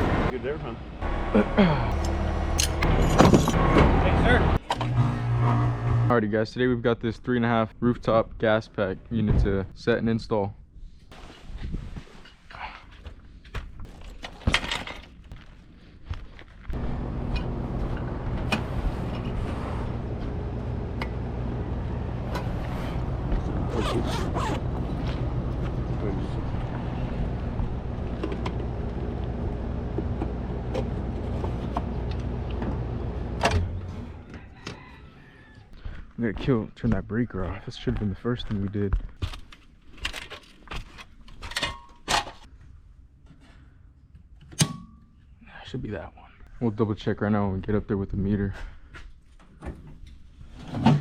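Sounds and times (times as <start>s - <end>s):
low machine hum: 16.8s - 34.2s.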